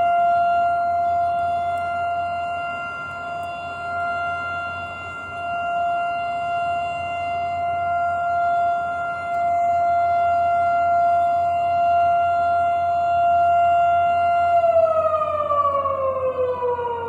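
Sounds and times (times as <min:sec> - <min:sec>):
air raid siren steady tone: 0:00.0 - 0:17.0.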